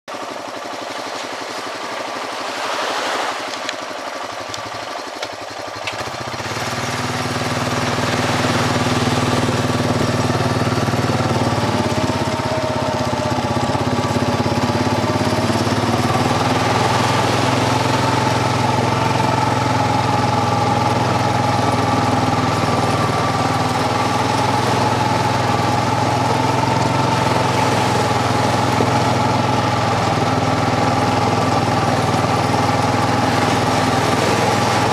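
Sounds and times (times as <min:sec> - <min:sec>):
quad bike engine running: 0:00.1 - 0:34.9.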